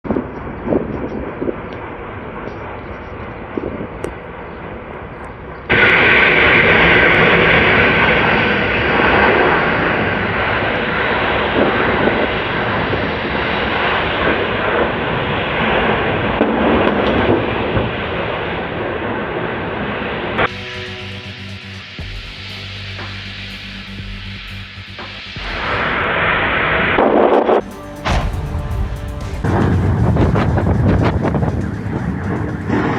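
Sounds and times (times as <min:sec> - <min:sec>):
large fire roaring: 0:05.7 - 0:20.4, 0:28.2 - 0:32.9.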